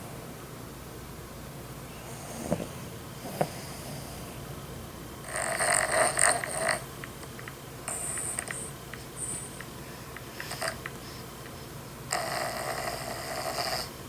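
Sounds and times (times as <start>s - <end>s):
person snoring: 5.3s - 6.8s, 10.3s - 11.2s, 12.1s - 13.9s.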